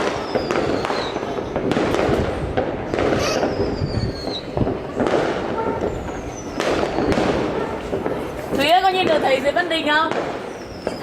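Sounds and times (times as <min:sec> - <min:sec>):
firework whistles falling in pitch: 0:00.0 - 0:02.2, 0:02.9 - 0:07.8, 0:10.3 - 0:11.0
fireworks crackling bangs: 0:00.0 - 0:11.0.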